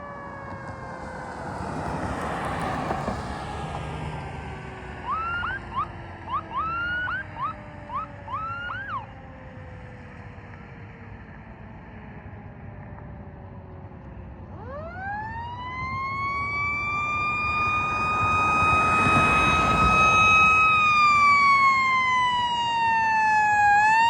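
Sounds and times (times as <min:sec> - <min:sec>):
truck engine and road noise: 0:00.0 - 0:24.0
siren tone winding down: 0:05.0 - 0:09.3, 0:14.6 - 0:24.0
short rising siren whoops: 0:14.6 - 0:24.0.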